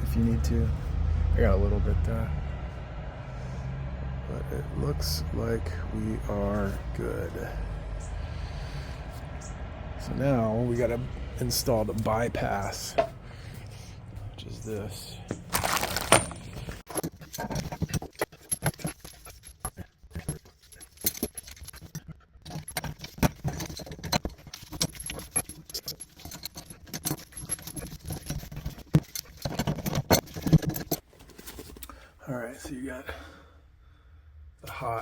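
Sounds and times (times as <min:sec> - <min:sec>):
small metal parts clinking: 0:15.3 - 0:31.0.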